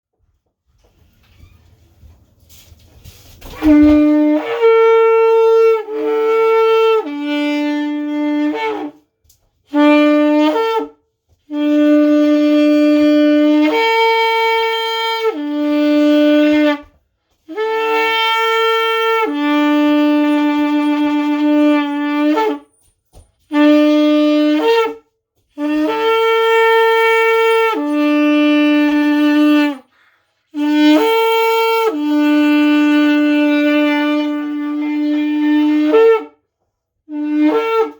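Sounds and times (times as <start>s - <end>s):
horn blasts: 3.4s - 22.8s, 23.4s - 37.9s
person breathing: 29.8s - 30.5s.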